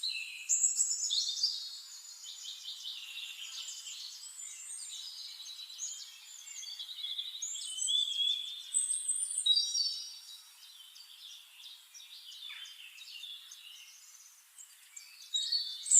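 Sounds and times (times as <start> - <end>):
songbirds singing and chirping: 0.0 - 15.9.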